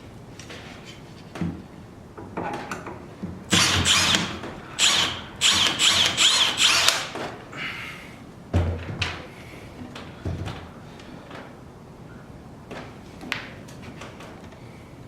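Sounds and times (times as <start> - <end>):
drill clicks: 3.5 - 7.2
power drill motor whine: 3.5 - 7.2.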